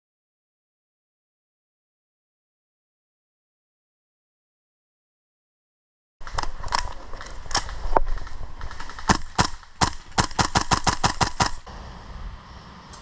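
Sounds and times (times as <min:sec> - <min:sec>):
airsoft guns firing: 0:06.2 - 0:11.7.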